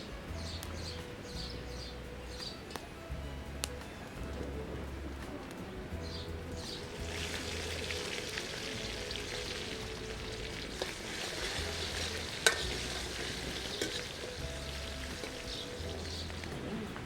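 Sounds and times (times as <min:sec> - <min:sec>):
food sizzling in a pan: 0:06.7 - 0:16.5.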